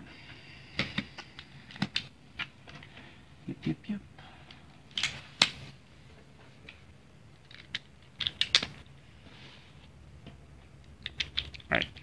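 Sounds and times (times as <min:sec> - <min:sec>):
speed cube plastic clicks: 0:00.8 - 0:02.5, 0:07.5 - 0:08.8, 0:10.9 - 0:12.0.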